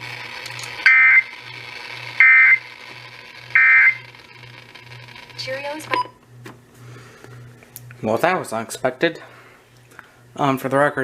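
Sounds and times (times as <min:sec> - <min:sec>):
warbling digital data tone bursts: 0:00.8 - 0:01.4, 0:02.2 - 0:02.8, 0:03.5 - 0:04.2.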